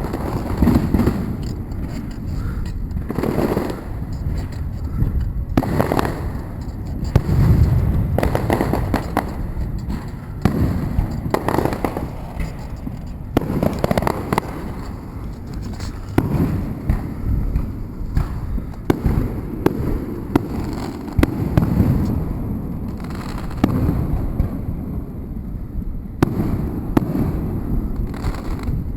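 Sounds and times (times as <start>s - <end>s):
low rumble: 0.0s - 20.4s
fireworks booms and cracks: 0.0s - 28.9s.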